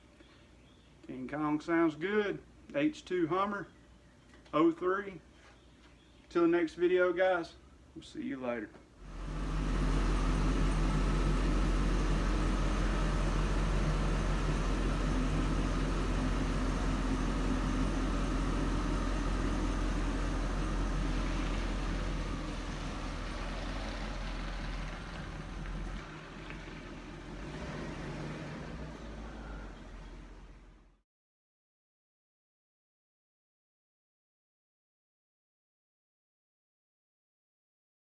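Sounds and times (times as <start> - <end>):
engine running steadily: 9.0 - 30.9.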